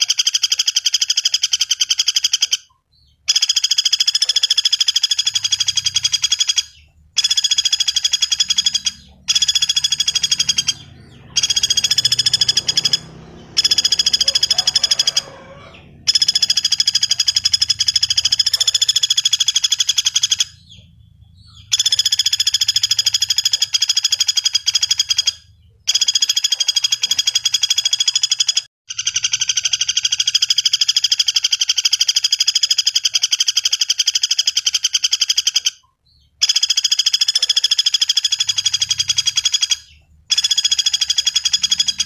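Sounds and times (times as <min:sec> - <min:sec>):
woodpecker rapid rattling trills: 0:00.0 - 0:42.0.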